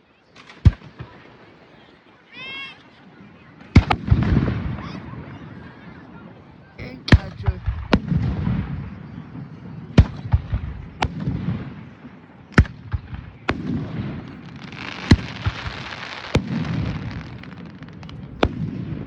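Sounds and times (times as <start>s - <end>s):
fireworks bangs with echo: 0.4s - 1.4s, 3.4s - 19.0s
fireworks hissing crackle: 13.0s - 18.5s.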